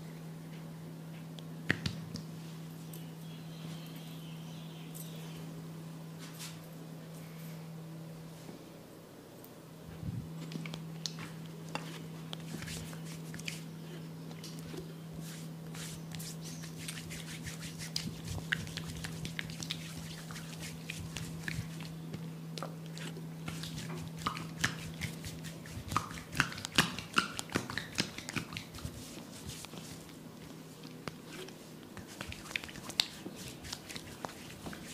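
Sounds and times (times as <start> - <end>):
steady low hum: 0.0 - 34.9
hands slapping oiled skin: 15.8 - 21.9, 23.4 - 30.0, 32.0 - 34.9.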